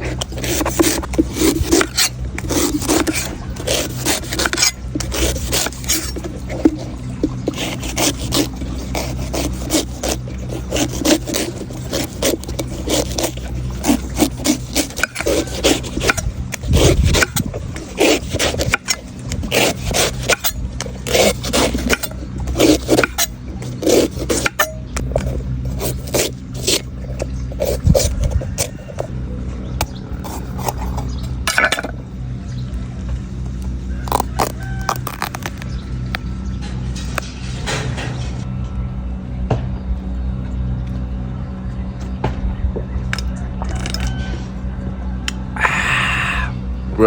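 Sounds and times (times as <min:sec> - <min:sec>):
knife scraping coconut husk: 0:00.0 - 0:29.1, 0:29.8 - 0:32.0, 0:33.9 - 0:38.4
steady low hum: 0:00.0 - 0:47.0.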